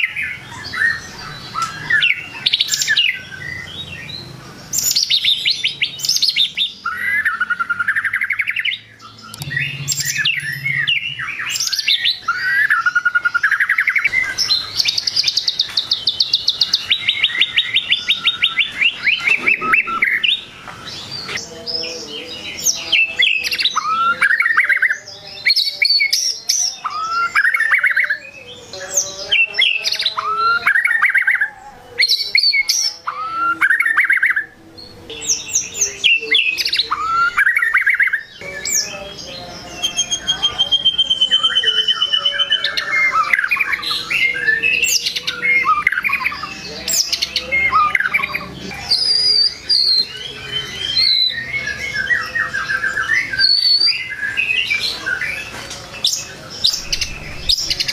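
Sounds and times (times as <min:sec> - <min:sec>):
bird singing whistled song: 0:00.0 - 0:57.9
fast descending bird trill: 0:06.8 - 0:21.4
rising whistled bird phrase: 0:16.8 - 0:21.4.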